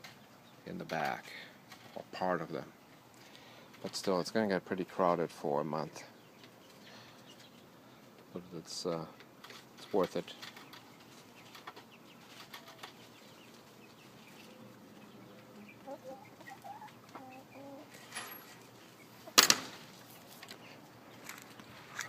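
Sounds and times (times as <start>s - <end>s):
chicks peeping: 5.8s - 18.0s, 18.6s - 19.4s.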